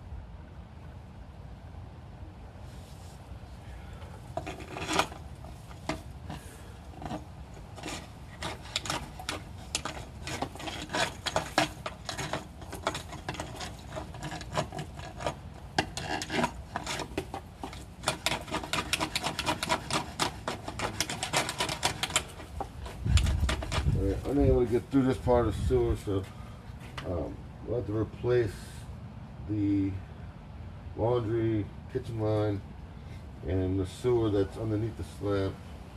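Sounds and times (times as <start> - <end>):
push cable rasping and clicking: 4.4 - 24.3.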